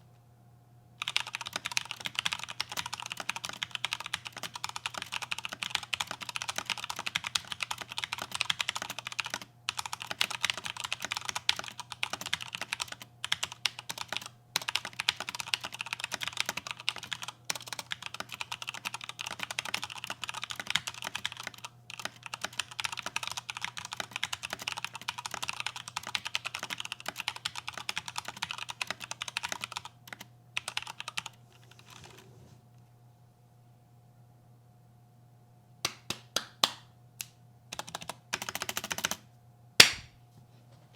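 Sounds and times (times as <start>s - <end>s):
typing on mechanical keyboard: 1.0s - 32.2s, 37.7s - 39.2s.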